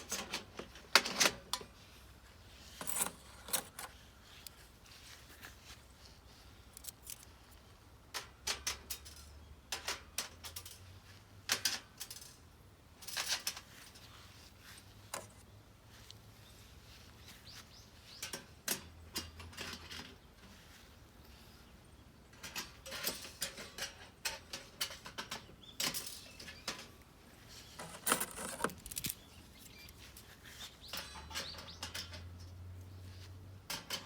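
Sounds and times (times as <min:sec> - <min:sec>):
metal parts clinking together: 0:02.8 - 0:04.0, 0:06.7 - 0:07.3, 0:22.4 - 0:26.9, 0:27.8 - 0:30.0.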